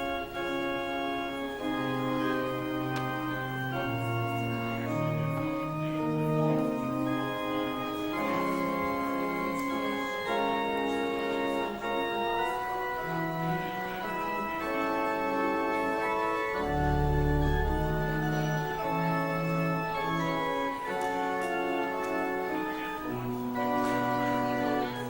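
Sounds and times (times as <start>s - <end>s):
organ playing slow chords: 0.0s - 25.0s
deep organ bass pedal note: 12.9s - 24.9s.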